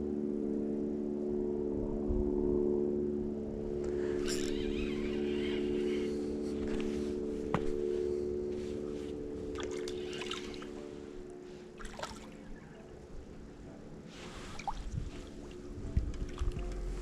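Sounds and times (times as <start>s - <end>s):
boat motor running: 2.8s - 11.4s
small water splashes: 11.8s - 12.7s.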